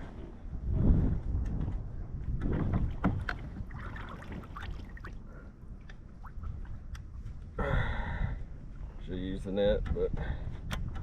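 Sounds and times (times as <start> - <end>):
wind rumbling on microphone: 0.0 - 11.0
water splashes and drips: 2.5 - 7.0.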